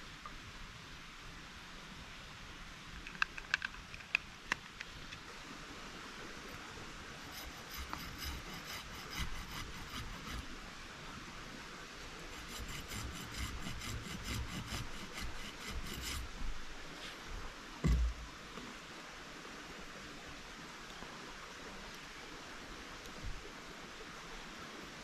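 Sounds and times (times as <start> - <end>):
rasp on wood: 7.2 - 10.6, 12.3 - 16.4, 17.8 - 18.2.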